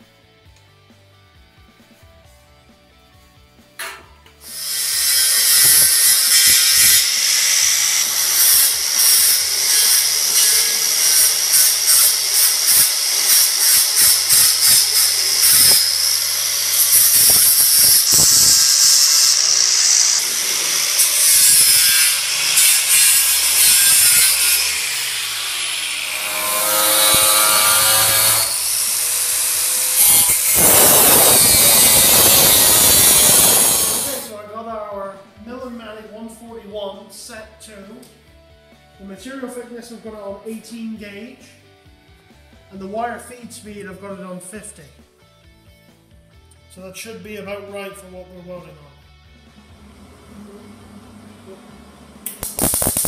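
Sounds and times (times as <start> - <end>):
angle grinder grinding metal: 4.4 - 34.4, 52.3 - 53.0
grinder motor whine: 15.1 - 21.2, 24.8 - 34.3.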